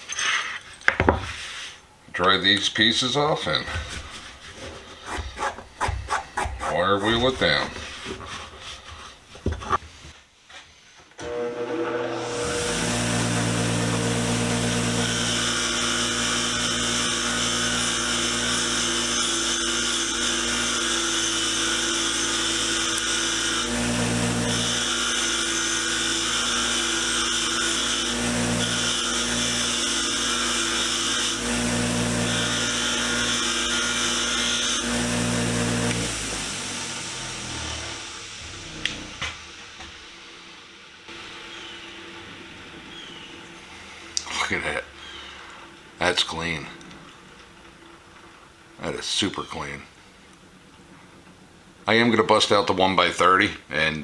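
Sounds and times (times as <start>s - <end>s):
motor hum: 11.2s - 40.2s.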